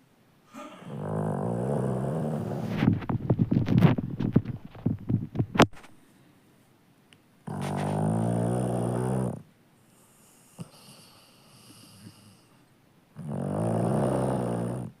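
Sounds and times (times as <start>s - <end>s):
dog snoring: 0.5s - 3.0s, 7.4s - 15.0s.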